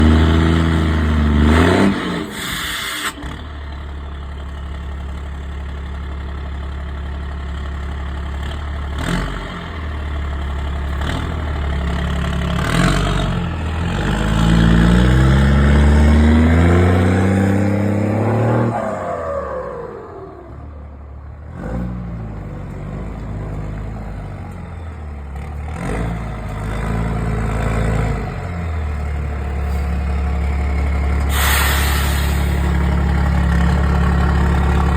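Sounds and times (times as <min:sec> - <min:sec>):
diesel truck engine revving: 0:00.0 - 0:05.3, 0:07.6 - 0:34.9.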